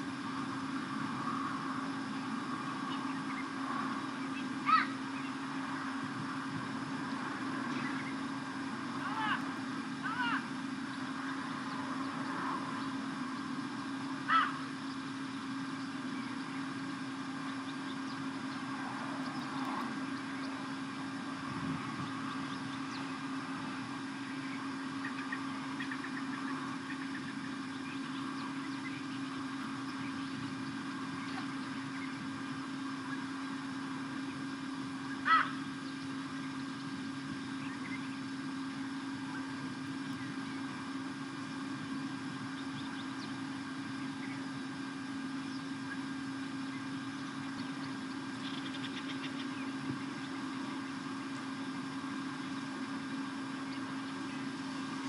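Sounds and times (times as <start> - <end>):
low hum: 0.0 - 55.0
sharp high bird calls: 4.2 - 5.4, 14.2 - 15.0, 35.1 - 36.8
faint bird chirps: 7.7 - 8.3.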